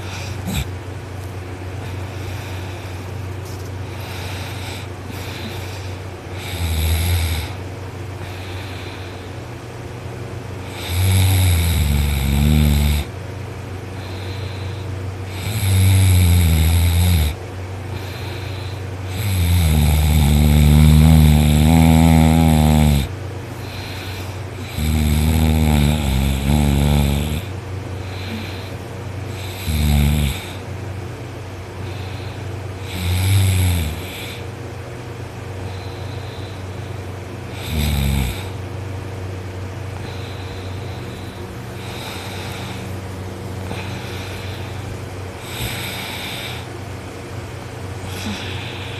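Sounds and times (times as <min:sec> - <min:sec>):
man snoring loudly: 0:00.0 - 0:00.7, 0:04.1 - 0:07.6, 0:10.6 - 0:13.2, 0:14.0 - 0:17.4, 0:18.0 - 0:30.7, 0:31.8 - 0:34.5, 0:37.5 - 0:38.6, 0:40.0 - 0:43.0, 0:43.6 - 0:46.7, 0:48.0 - 0:48.9
steady low hum: 0:00.0 - 0:48.9.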